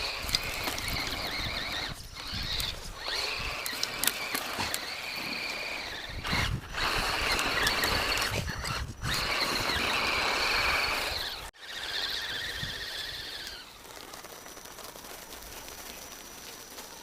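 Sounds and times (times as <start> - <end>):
rc car electric motor whining: 0.0 - 16.9
sharp clicks: 0.1 - 4.9.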